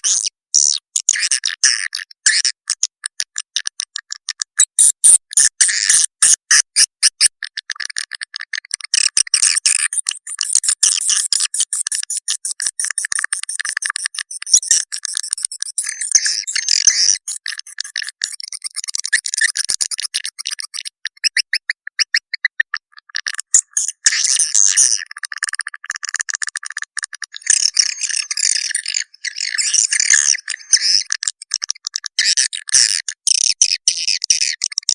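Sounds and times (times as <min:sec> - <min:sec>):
swiftlets twittering and chirping: 0:27.3 - 0:31.1.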